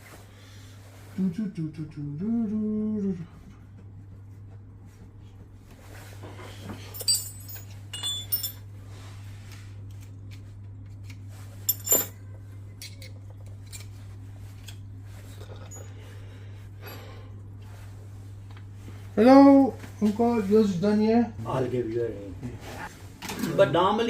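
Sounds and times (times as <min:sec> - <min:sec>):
steady low hum: 0:00.0 - 0:24.0
light metallic clinks: 0:06.9 - 0:08.7.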